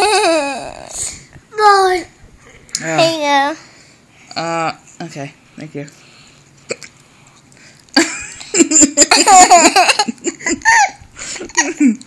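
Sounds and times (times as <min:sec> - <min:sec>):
children laughing: 0:08.0 - 0:12.0.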